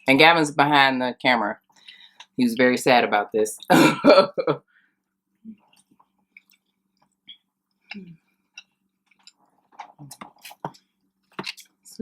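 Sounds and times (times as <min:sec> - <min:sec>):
soft chewing and biting: 0:05.5 - 0:11.8.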